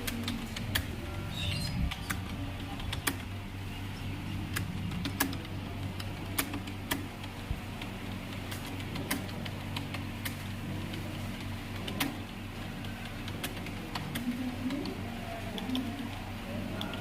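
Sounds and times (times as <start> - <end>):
steady low hum: 0.0 - 17.0
keyboard keys clicking: 4.5 - 17.0.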